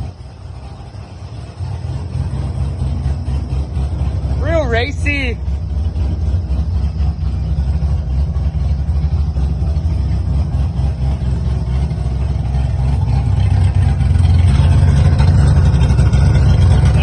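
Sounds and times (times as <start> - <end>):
car engine idling: 0.0 - 17.0.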